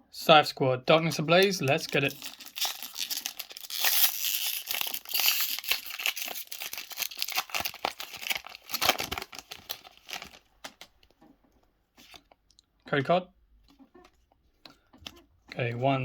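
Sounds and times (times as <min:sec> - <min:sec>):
foil wrapper tearing and crinkling: 0:01.1 - 0:10.9.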